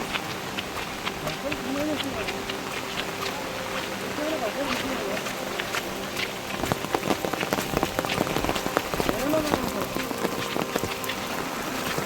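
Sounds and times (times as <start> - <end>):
heavy rain hissing: 0.0 - 12.0
raindrops tapping on hard surface: 0.0 - 12.0.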